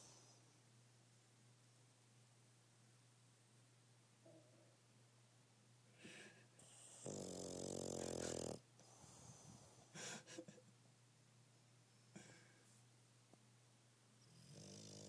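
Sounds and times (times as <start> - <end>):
dog snorting: 6.6 - 8.6
dog snoring: 6.6 - 9.7, 14.2 - 15.0.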